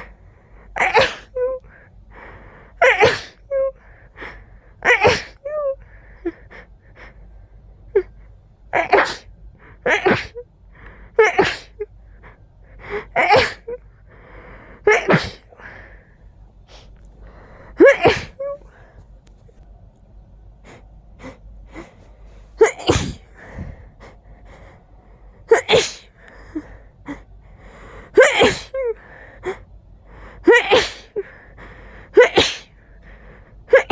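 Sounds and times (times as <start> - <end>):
person sneezing: 0.8 - 1.4, 2.8 - 3.5, 4.8 - 5.6, 8.8 - 9.3, 9.9 - 10.4, 11.2 - 11.8, 12.9 - 13.8, 14.9 - 15.9, 17.8 - 18.7, 22.6 - 23.8, 25.5 - 26.7, 28.1 - 29.0, 30.4 - 31.3, 32.1 - 32.8
faint breaths: 1.6 - 2.8, 13.8 - 22.6, 23.2 - 28.2, 31.1 - 33.7.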